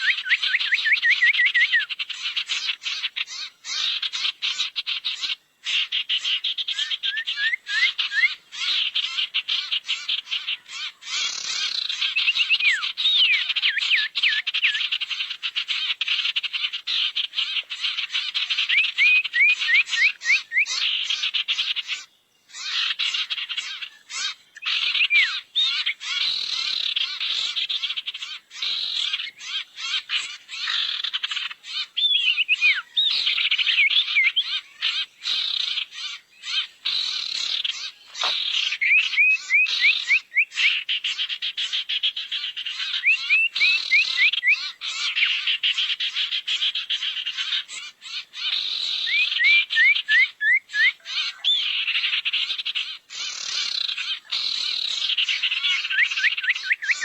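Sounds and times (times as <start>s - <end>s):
bird twittering chatter: 0.0s - 57.0s
quick rising bird chirps: 54.9s - 57.0s.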